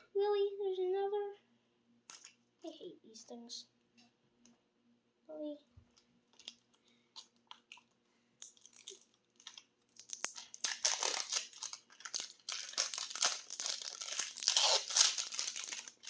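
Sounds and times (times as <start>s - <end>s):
plastic wrapping crinkling: 5.9s - 16.0s.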